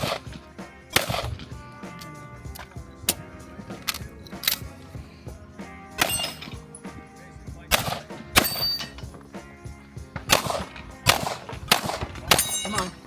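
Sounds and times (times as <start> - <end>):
gunshots: 0.0 - 1.7, 5.9 - 6.7, 7.7 - 9.1, 10.2 - 13.0
metallic ring of steel targets: 5.9 - 6.9, 7.7 - 9.2, 10.3 - 13.0.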